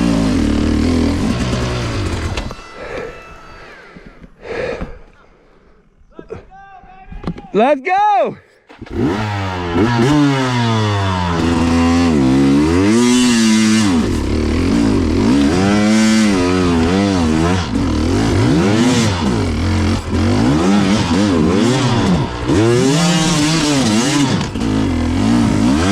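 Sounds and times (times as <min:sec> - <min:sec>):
motorbike engine revving: 0:00.0 - 0:02.5, 0:08.8 - 0:25.9.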